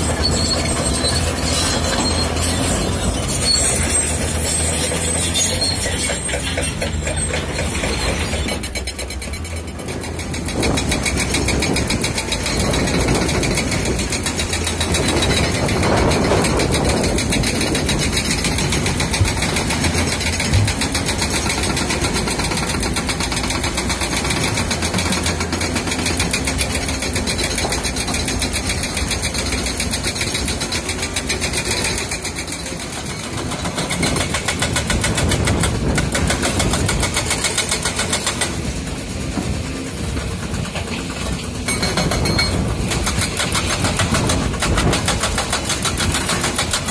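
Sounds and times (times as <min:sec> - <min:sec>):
heavy machinery diesel engine: 0:00.0 - 0:46.9.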